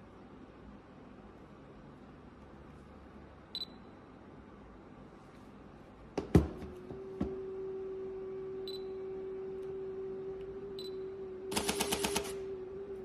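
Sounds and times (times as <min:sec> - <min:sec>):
camera motor hum: 0:11.5 - 0:12.5.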